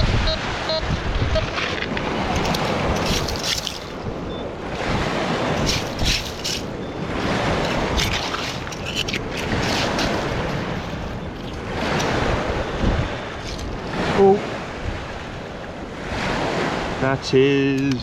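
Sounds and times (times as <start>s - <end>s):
wind buffeting microphone: 0.0s - 17.0s
sharp rustling noises: 1.4s - 4.1s, 5.5s - 12.3s.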